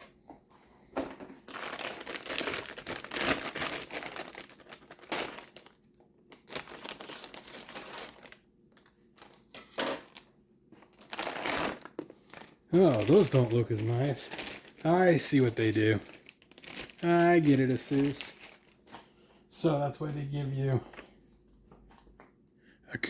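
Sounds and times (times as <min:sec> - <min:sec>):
plastic packaging crinkling: 0:01.4 - 0:19.0.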